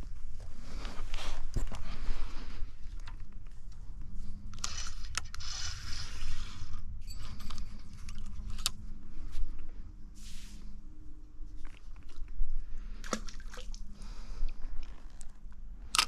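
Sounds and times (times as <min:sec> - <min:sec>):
crunching and scraping handling noises: 0:00.0 - 0:10.7
low rumble: 0:00.0 - 0:16.0.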